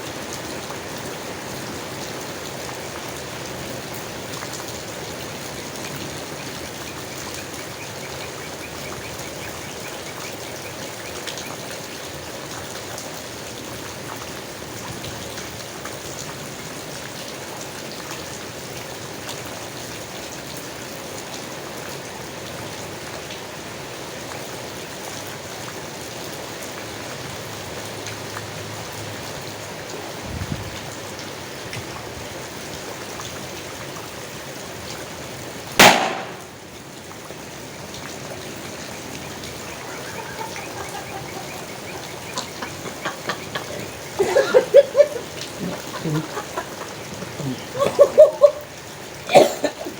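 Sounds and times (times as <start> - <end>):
rain falling on leaves: 0.0 - 49.9.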